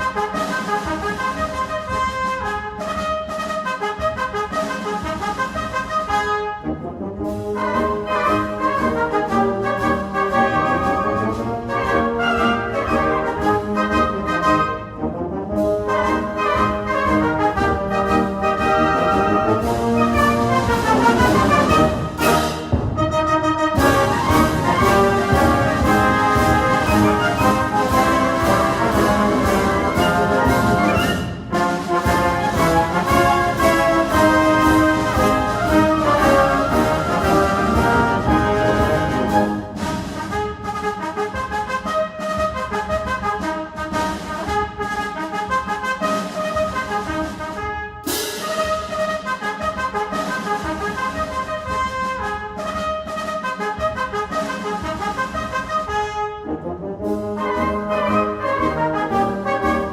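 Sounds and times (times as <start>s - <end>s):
orchestral music with brass chords: 0.0s - 59.9s.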